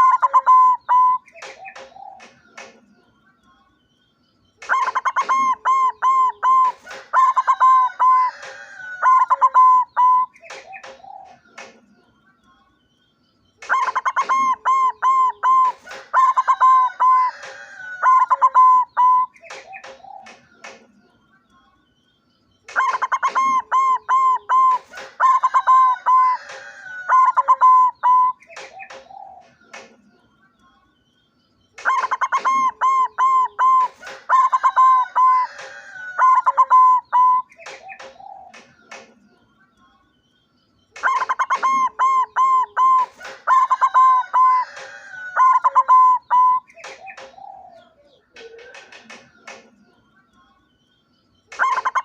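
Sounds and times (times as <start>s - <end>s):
dove cooing: 0.0s - 2.4s, 4.6s - 11.8s, 13.6s - 20.6s, 22.7s - 29.9s, 31.8s - 39.1s, 41.0s - 49.7s, 51.5s - 52.0s.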